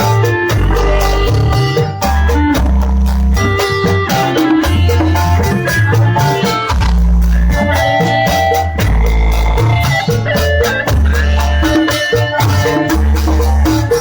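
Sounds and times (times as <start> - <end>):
sustained melodic tones: 0.0 - 6.7
heavy bass line: 0.0 - 14.0
steady percussion: 0.0 - 14.0.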